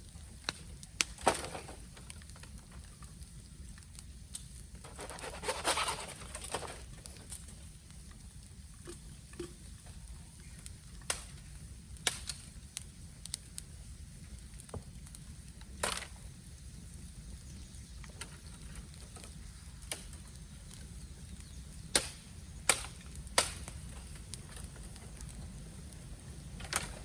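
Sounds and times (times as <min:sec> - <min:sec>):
bamboo fire crackling and popping: 0:00.0 - 0:27.0.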